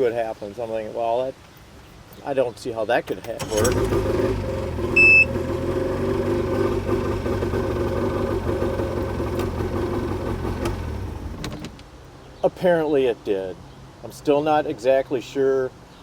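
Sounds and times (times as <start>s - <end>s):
outboard motor idling: 3.2s - 11.7s
short high beep: 5.0s - 5.3s.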